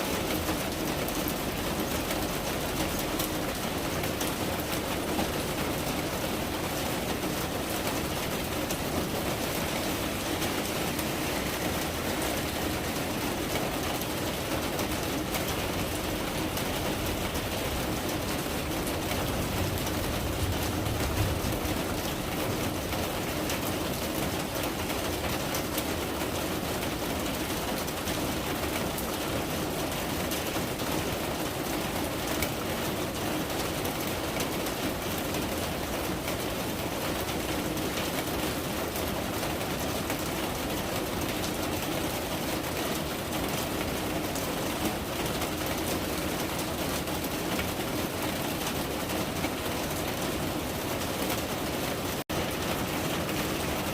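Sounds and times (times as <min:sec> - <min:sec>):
steady rain falling: 0:00.0 - 0:53.9.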